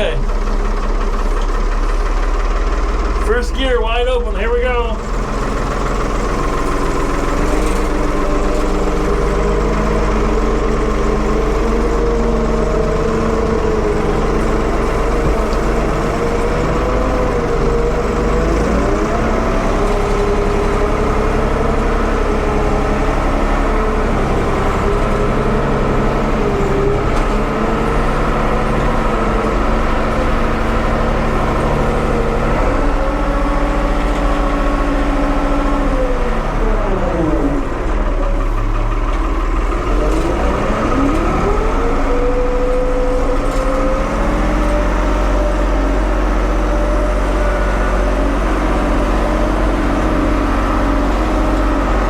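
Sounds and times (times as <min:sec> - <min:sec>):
backhoe engine at full throttle: 0:00.0 - 0:52.0.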